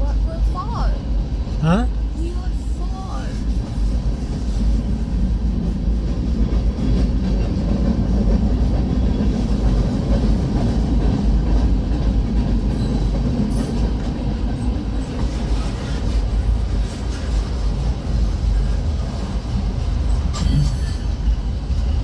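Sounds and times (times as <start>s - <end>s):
freight train wheels rumbling on rail: 0.0s - 22.0s.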